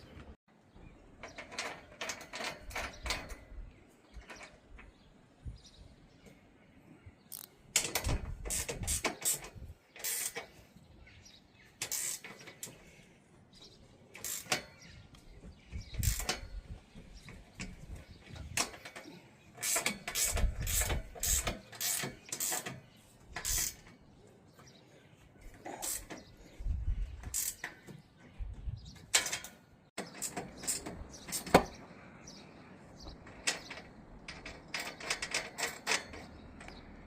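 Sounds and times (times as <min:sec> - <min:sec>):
ratchet spanner clicking: 0:07.3 - 0:10.5, 0:11.8 - 0:12.7, 0:14.2 - 0:14.7, 0:16.0 - 0:16.7, 0:19.6 - 0:22.8, 0:23.4 - 0:23.9, 0:27.2 - 0:27.7.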